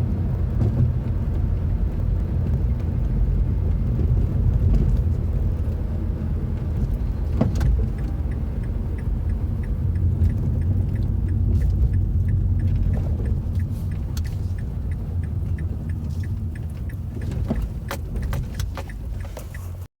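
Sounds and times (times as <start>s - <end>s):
car rolling low rumble: 0.0s - 19.9s
light ticking: 6.6s - 19.9s.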